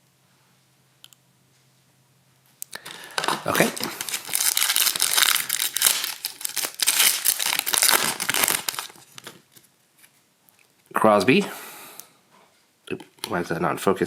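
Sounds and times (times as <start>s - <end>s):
card pack wrapper crinkling: 2.7s - 10.1s.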